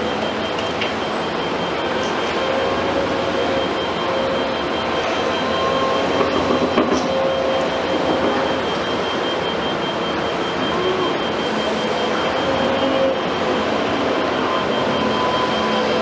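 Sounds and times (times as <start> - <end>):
excavator engine and hydraulics: 0.0 - 16.0
high whine: 0.0 - 16.0
faint metal squeals: 10.6 - 16.0.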